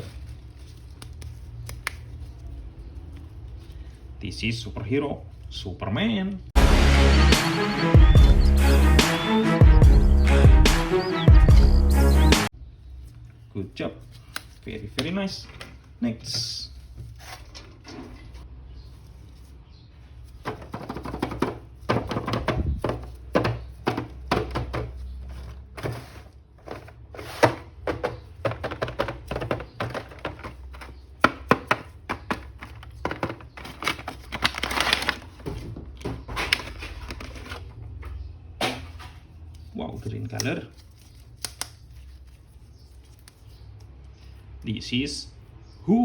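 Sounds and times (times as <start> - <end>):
plastic packaging rustling: 0.0 - 4.2, 16.7 - 37.8
plastic clicks and knocks: 27.8 - 34.1.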